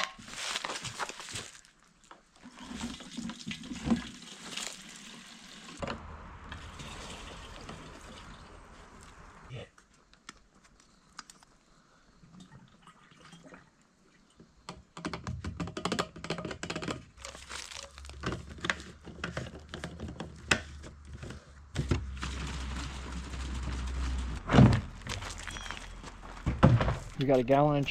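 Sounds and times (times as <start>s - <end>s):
plastic gas can crinkling: 0.0s - 5.2s, 16.2s - 27.3s.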